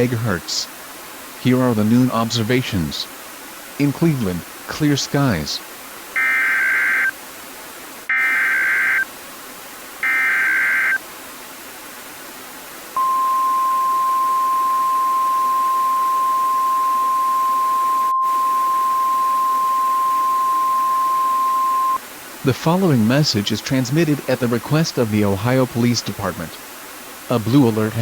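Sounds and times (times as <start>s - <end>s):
faint hiss: 0.0s - 28.0s
digital data tone bursts: 6.2s - 7.1s, 8.1s - 9.1s, 10.0s - 11.0s
steady warning alarm tone: 6.2s - 7.1s, 8.1s - 9.1s, 10.0s - 11.0s, 13.0s - 22.0s.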